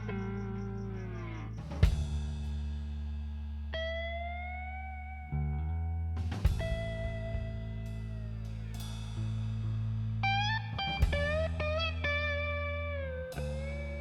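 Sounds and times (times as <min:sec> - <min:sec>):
steady bass: 0:00.0 - 0:14.0
guitar instrumental music: 0:03.8 - 0:09.0, 0:10.2 - 0:14.0.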